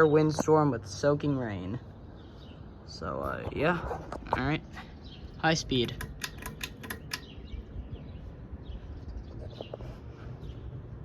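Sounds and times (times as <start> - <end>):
sharp clicks: 5.6 - 7.5.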